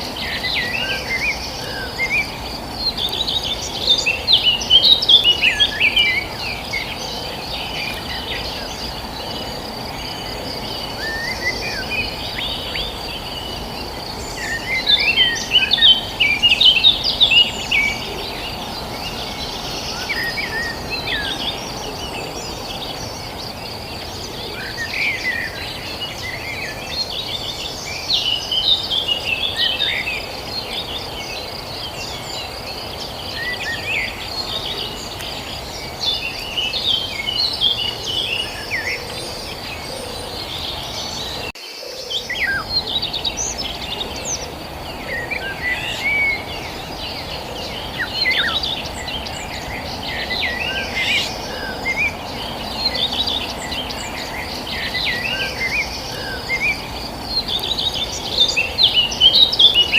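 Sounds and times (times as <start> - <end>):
small birds chirping: 0.0 - 59.9.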